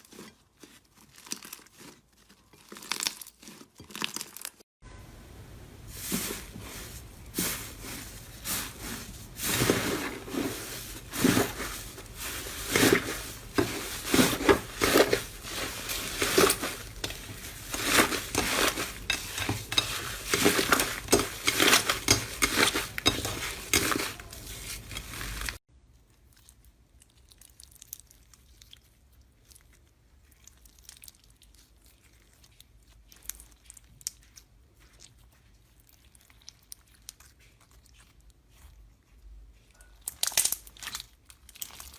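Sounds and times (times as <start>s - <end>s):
slime squished crackling: 0.0s - 4.6s, 40.0s - 41.9s.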